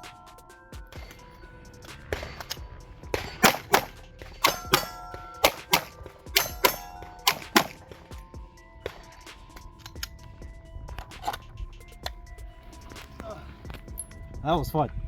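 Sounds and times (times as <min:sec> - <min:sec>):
bullets clanging off steel targets: 0:00.0 - 0:10.3
rapid gunshots: 0:01.9 - 0:09.3.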